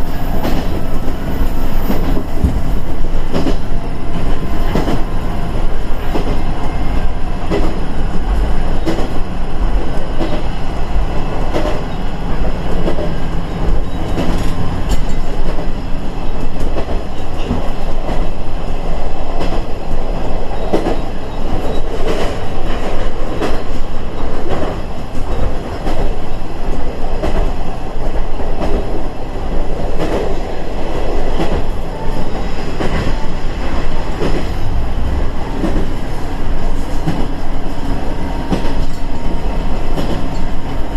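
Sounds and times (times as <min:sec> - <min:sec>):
train wheels clicking over rail joints: 0:00.0 - 0:40.9.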